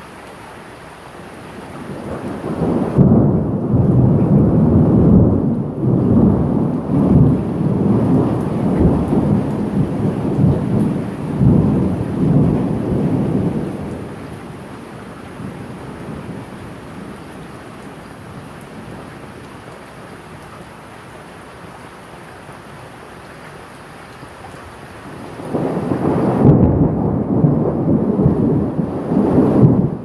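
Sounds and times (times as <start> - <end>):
steady rain: 0.0 - 30.0
thunder rumbling: 1.8 - 19.5, 25.1 - 30.0.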